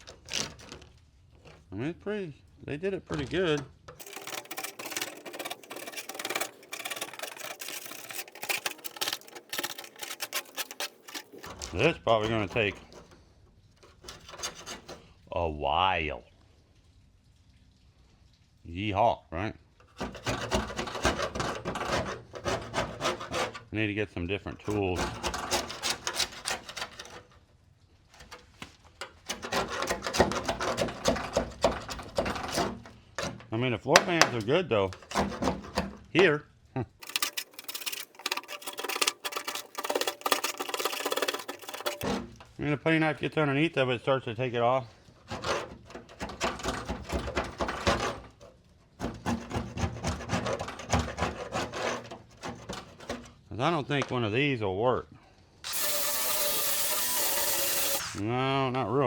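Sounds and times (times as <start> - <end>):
putty knife scraping metal: 0.0 - 0.8, 3.1 - 13.2, 13.8 - 15.1, 19.9 - 23.8, 24.7 - 27.4, 28.2 - 36.2, 37.0 - 42.5, 45.1 - 53.4, 55.6 - 58.2.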